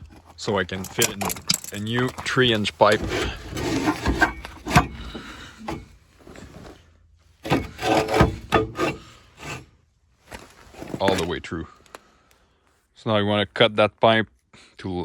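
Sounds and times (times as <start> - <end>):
metal scraping and rubbing: 0.0 - 6.8, 7.4 - 9.7.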